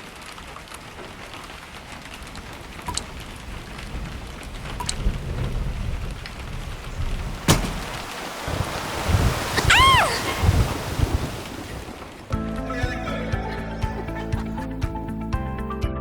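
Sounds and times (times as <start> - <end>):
thunder rumble: 0.0 - 12.7
heavy rain: 0.0 - 14.8
sharp thunder crack: 2.2 - 12.5.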